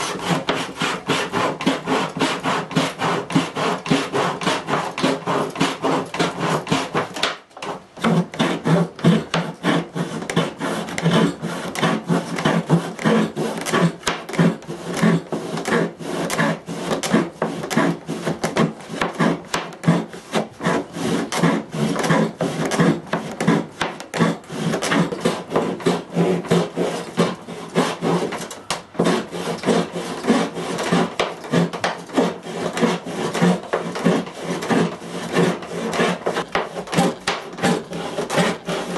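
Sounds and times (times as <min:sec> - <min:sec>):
saw cutting wood: 0:00.0 - 0:38.9.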